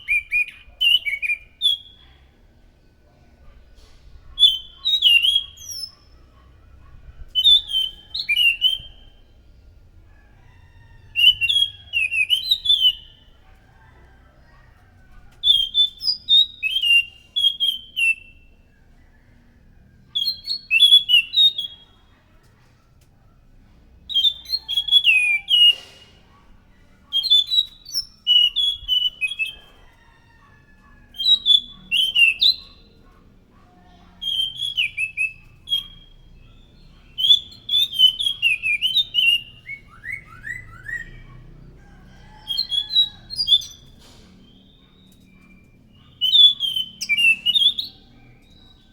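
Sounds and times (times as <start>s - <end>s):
thrush singing whistled notes: 34.2s - 41.4s.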